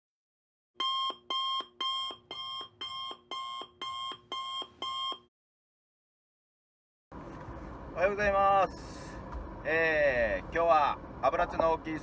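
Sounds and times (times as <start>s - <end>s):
alarm clock beeping: 0.8s - 5.3s.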